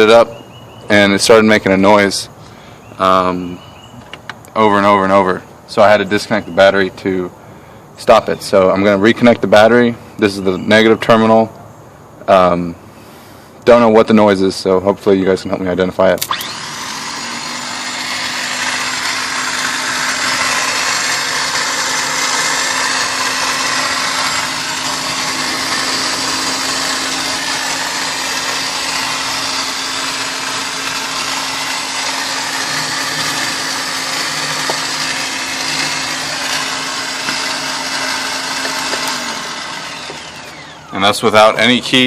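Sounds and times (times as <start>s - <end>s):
electric motor whirring: 16.2s - 42.0s.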